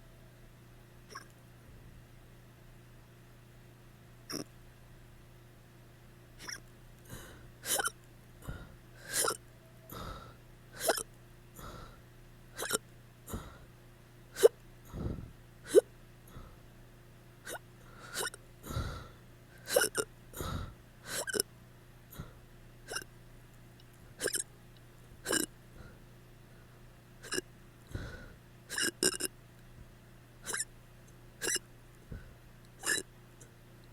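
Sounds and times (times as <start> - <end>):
person hiccuping: 4.3 - 4.5, 6.4 - 6.6, 7.6 - 8.0, 9.0 - 9.4, 10.8 - 11.1, 12.6 - 12.8, 14.4 - 14.6, 15.7 - 15.9, 17.4 - 18.4, 19.6 - 20.1, 21.1 - 21.5, 22.9 - 23.1, 24.2 - 24.5, 25.2 - 25.5, 27.2 - 27.5, 28.7 - 29.3, 30.4 - 30.7, 31.4 - 31.6, 32.8 - 33.1.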